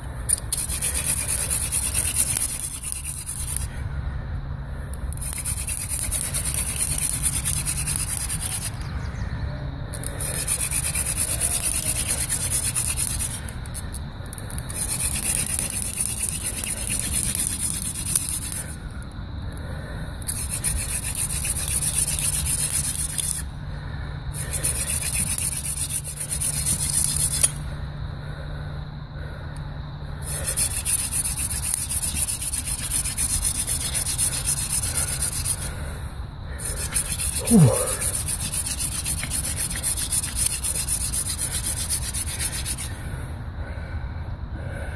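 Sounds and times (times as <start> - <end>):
hand drill rubbing wooden spindle: 0.0 - 3.7, 5.1 - 8.9, 9.9 - 18.8, 20.3 - 23.5, 24.4 - 27.6, 30.2 - 35.7, 36.6 - 43.0.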